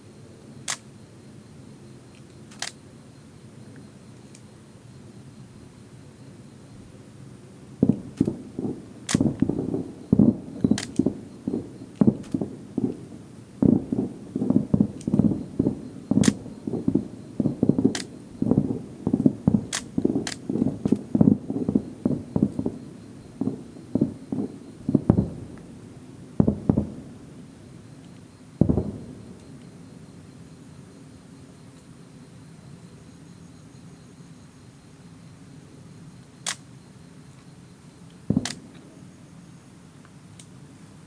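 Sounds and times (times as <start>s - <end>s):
sharp firework cracks: 7.8s - 25.8s, 26.4s - 27.4s, 28.6s - 29.6s, 38.3s - 38.9s
fireworks booming: 7.8s - 30.3s, 38.3s - 39.0s.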